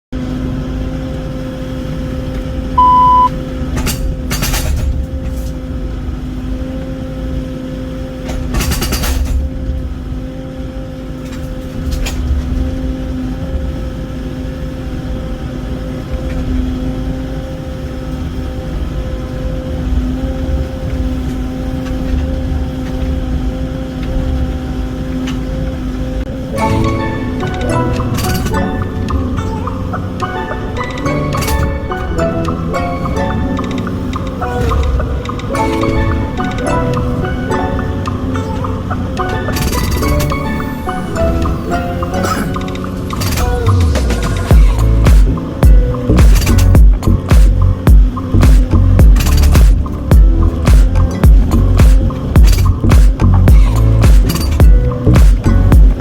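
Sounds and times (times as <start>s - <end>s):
excavator diesel engine running: 0.2s - 56.0s
short high beep: 2.8s - 3.3s.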